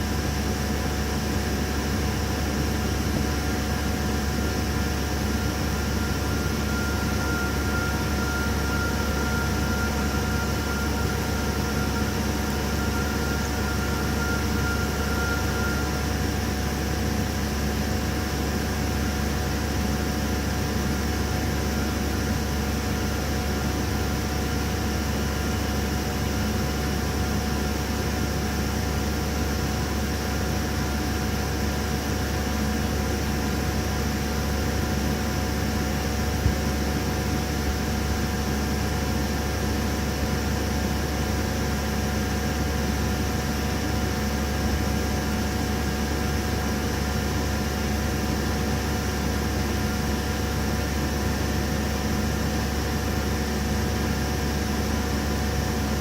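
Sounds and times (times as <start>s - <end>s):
faint high whine: 0.0s - 27.0s
milling machine humming: 0.1s - 19.8s.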